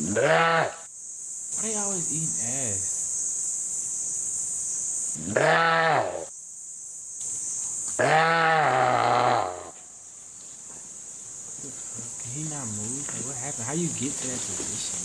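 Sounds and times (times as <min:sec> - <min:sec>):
deer bleating in distress: 0:00.0 - 0:00.8, 0:05.2 - 0:06.2
steady high hiss: 0:00.8 - 0:15.0.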